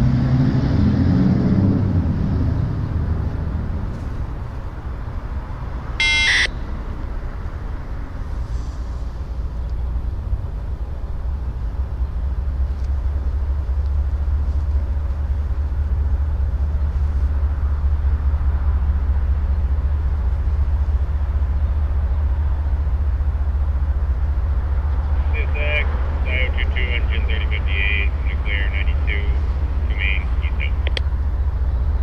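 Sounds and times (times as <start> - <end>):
freight train rumbling past: 6.6 - 32.0.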